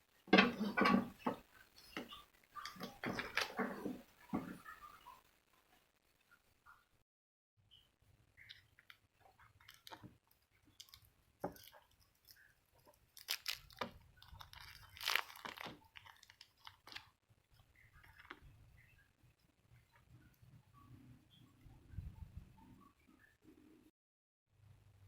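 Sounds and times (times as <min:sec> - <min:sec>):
plastic packaging crinkling: 0:02.6 - 0:03.8, 0:09.6 - 0:10.0, 0:10.7 - 0:17.1.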